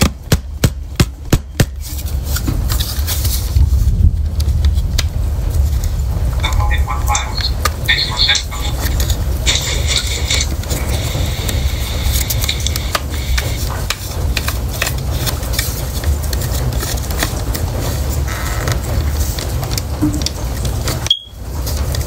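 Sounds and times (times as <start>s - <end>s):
steady low rumble: 0.0s - 22.0s
plastic clicks and scrapes: 8.6s - 22.0s.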